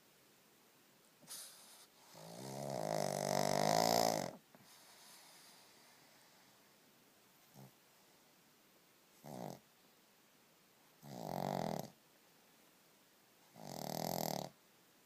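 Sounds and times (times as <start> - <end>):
dog snoring: 1.2 - 5.8, 7.4 - 7.8, 9.2 - 9.6, 11.0 - 12.0, 13.5 - 14.6.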